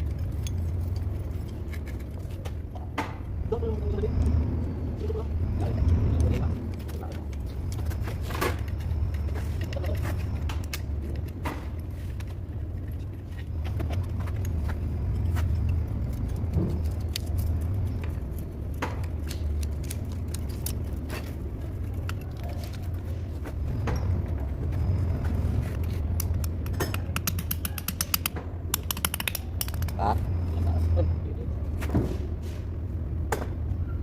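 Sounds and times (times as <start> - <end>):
metal tools clinking: 0.0 - 2.4
engine humming: 0.0 - 34.0.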